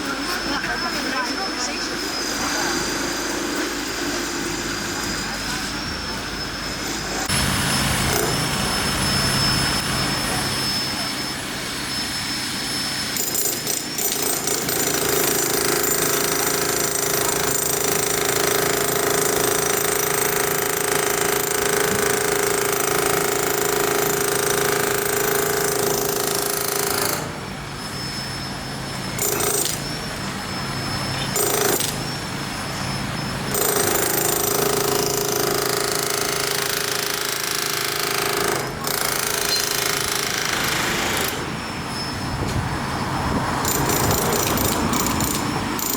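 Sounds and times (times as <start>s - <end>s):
jackhammer hammering: 7.2s - 9.0s, 13.1s - 27.4s, 29.2s - 29.9s, 31.3s - 32.2s, 33.5s - 41.6s, 43.6s - 45.9s.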